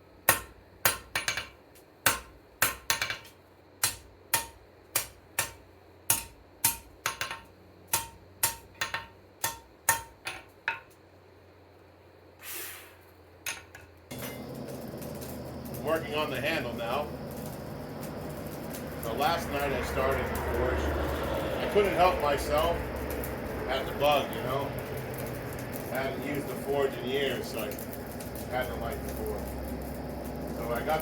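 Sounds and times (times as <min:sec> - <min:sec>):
hammer striking steel on anvil: 0:00.3 - 0:10.9
short hiss: 0:12.4 - 0:13.2.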